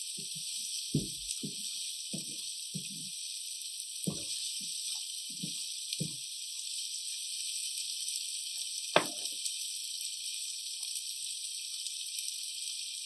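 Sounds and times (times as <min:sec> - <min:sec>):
stuffing sizzling in oil: 0:00.0 - 0:13.0
soft knocks: 0:09.0 - 0:09.3.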